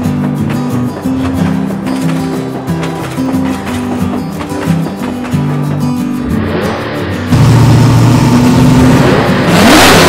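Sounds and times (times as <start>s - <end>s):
music with steady beat: 0.0s - 7.3s
plucked guitar: 0.0s - 10.0s.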